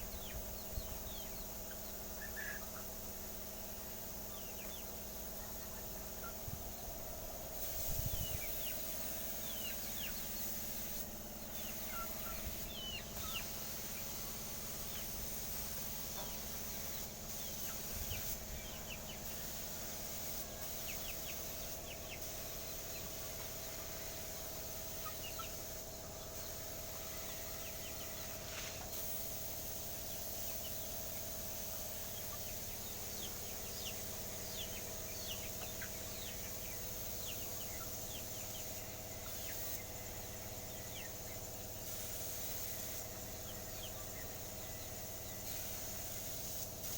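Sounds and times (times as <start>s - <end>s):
high steady hiss: 0.0s - 46.9s
steady low hum: 0.0s - 46.9s
birds chirping: 7.9s - 15.2s.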